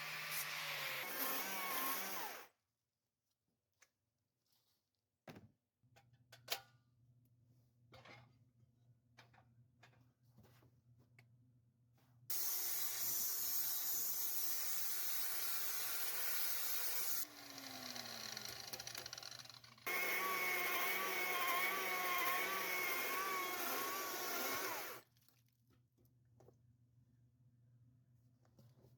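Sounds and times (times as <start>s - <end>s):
power tool cutting wood: 0.0s - 2.5s, 12.3s - 25.0s.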